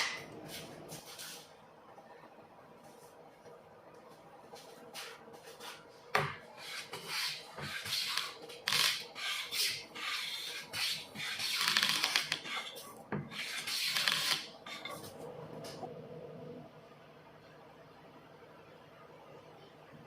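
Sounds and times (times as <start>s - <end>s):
abrasive scraping wood: 6.6s - 15.2s.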